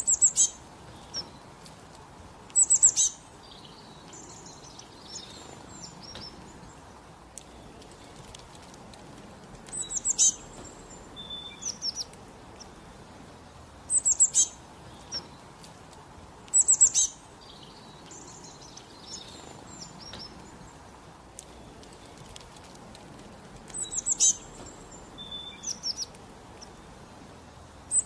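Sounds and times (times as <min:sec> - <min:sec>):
bird chirping high: 0:00.0 - 0:01.4, 0:02.6 - 0:06.8, 0:09.7 - 0:12.8, 0:13.9 - 0:15.4, 0:16.5 - 0:20.8, 0:23.7 - 0:27.0
softer lower bird calls: 0:09.7 - 0:12.8, 0:13.9 - 0:15.5, 0:16.5 - 0:22.2, 0:23.7 - 0:27.0.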